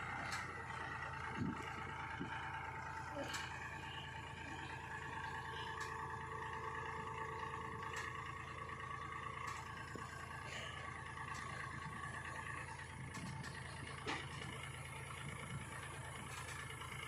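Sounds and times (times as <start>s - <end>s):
diesel engine whining: 0.0s - 17.0s.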